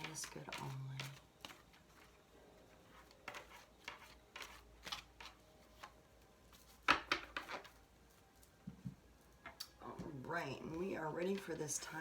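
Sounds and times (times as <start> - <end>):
cards shuffling and tapping: 0.0 - 2.2, 2.9 - 7.8.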